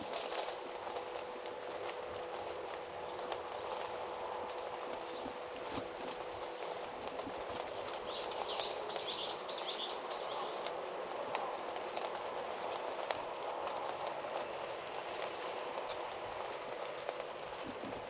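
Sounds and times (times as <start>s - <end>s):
steady rain: 0.0s - 18.0s.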